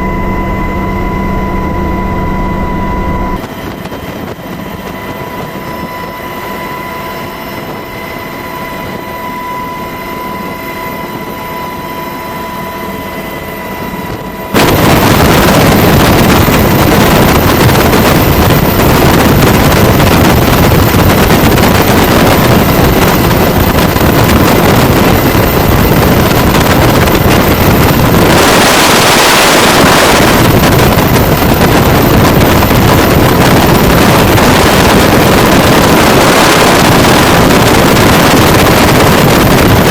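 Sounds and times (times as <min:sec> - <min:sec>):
wind buffeting microphone: 0:00.0 - 0:06.6, 0:14.0 - 0:39.9
helicopter turbine whine: 0:00.0 - 0:39.9
rotor wash rushing: 0:14.6 - 0:39.9.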